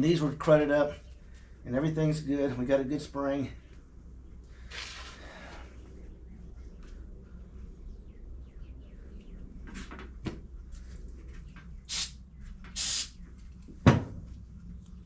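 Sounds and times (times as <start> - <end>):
short hiss bursts: 11.9 - 12.2, 12.8 - 13.2.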